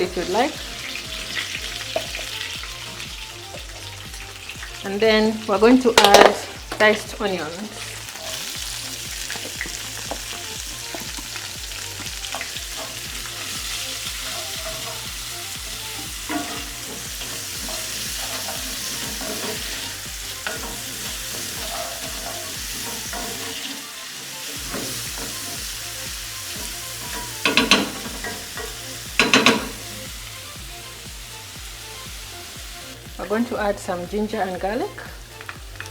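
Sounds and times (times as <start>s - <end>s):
onions sizzling in a pan: 0.0s - 35.9s
spatula scraping a pan: 16.0s - 23.9s.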